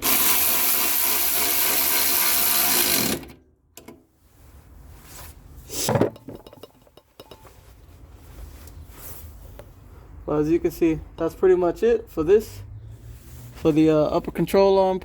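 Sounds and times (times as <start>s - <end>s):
cordless power tool running: 0.0s - 3.3s.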